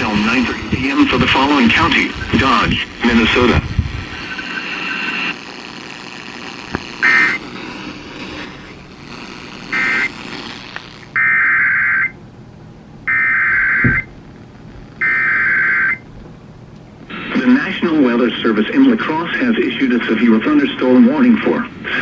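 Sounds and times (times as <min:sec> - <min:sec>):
raspy two-tone data bursts: 0:00.0 - 0:11.4
buzzy data bursts: 0:00.0 - 0:12.2, 0:13.0 - 0:16.0
radio receiver hiss: 0:00.0 - 0:12.2, 0:13.1 - 0:16.1, 0:17.0 - 0:22.0.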